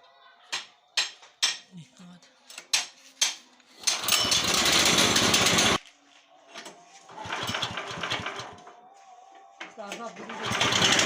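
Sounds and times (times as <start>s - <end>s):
sawmill engine running: 3.9s - 5.8s, 7.2s - 8.6s, 10.2s - 11.0s.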